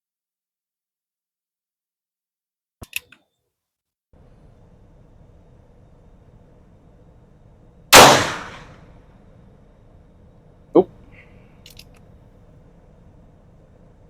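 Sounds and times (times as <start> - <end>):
loud gunshot: 8.0 - 8.8.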